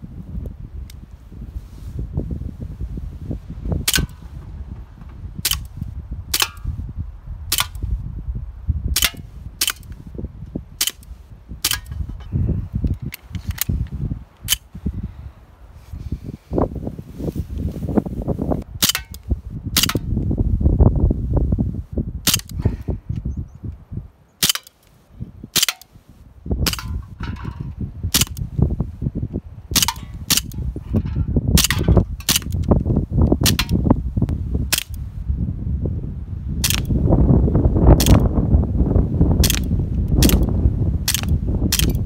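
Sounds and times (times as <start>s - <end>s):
wind rumble on microphone: 0.0s - 42.0s
bb pistol shots: 3.8s - 4.3s, 5.4s - 6.8s, 7.5s - 7.8s, 9.0s - 9.9s, 10.8s - 12.0s, 18.8s - 19.2s, 19.8s - 20.1s, 22.2s - 22.6s, 24.4s - 24.8s, 25.5s - 25.9s, 26.6s - 27.0s, 28.1s - 28.4s, 29.7s - 30.6s, 31.6s - 32.7s, 33.4s - 33.8s, 34.7s - 35.0s, 36.6s - 37.0s, 38.0s - 38.2s, 39.4s - 40.5s, 41.1s - 42.0s.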